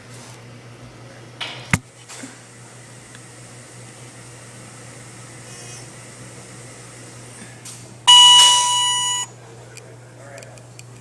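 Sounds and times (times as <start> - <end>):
elevator beep: 8.1 - 9.3
low machine hum: 8.1 - 9.3.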